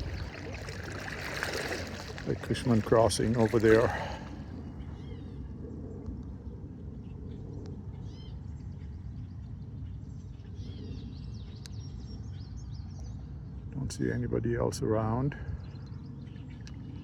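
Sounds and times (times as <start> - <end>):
small birds chirping: 0.0 - 5.4.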